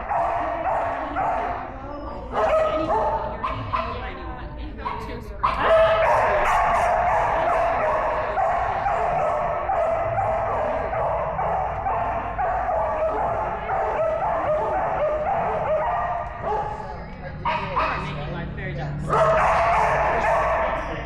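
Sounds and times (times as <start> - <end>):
dog barking and yipping: 5.4 - 16.8, 19.1 - 20.8.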